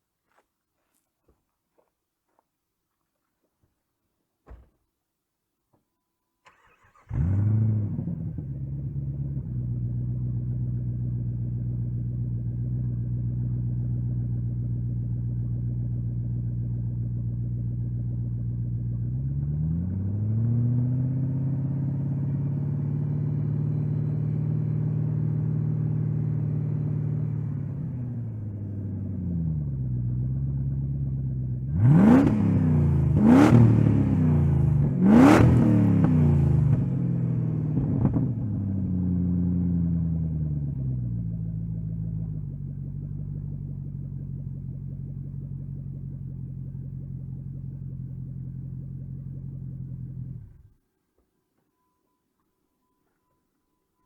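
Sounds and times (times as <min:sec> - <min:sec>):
engine cranking and idling: 0:06.4 - 0:07.8
engine revving: 0:06.5 - 0:09.8, 0:19.1 - 0:27.2, 0:31.6 - 0:38.8.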